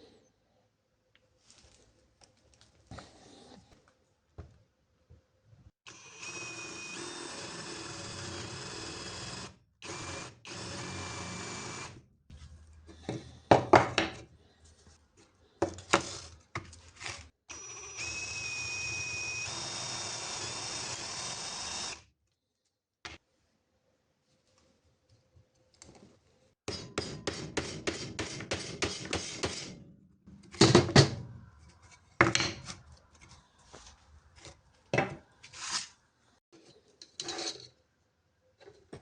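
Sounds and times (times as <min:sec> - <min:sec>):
power drill whining: 0:05.9 - 0:12.0, 0:17.5 - 0:22.0.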